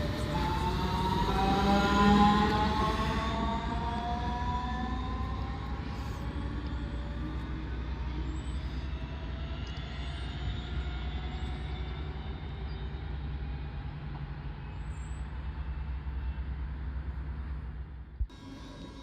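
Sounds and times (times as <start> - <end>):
electric train humming: 0.0 - 19.0.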